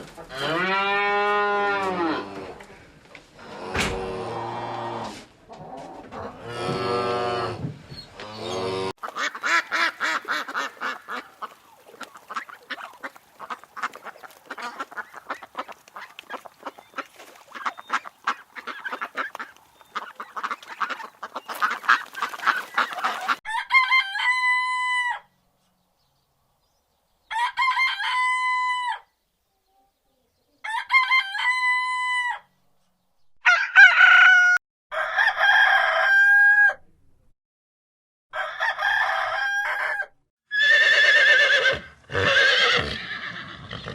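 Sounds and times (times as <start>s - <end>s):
cow mooing: 0.3s - 2.6s, 6.4s - 7.6s
chickens clucking: 5.5s - 23.4s
rooster crowing: 23.5s - 25.3s, 27.3s - 29.1s, 30.6s - 32.5s, 33.4s - 36.8s, 38.4s - 40.2s.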